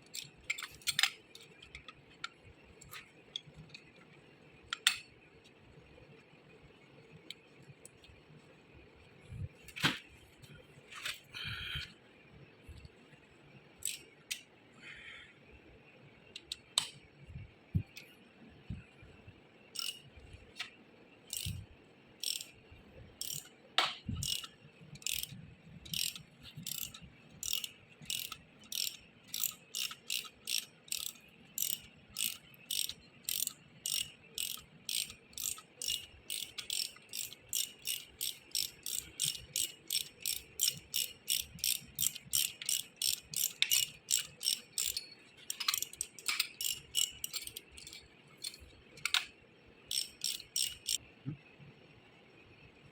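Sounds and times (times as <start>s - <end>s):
metallic clicking strokes: 19.8s - 20.7s, 21.3s - 22.6s, 23.2s - 49.3s, 49.9s - 51.1s.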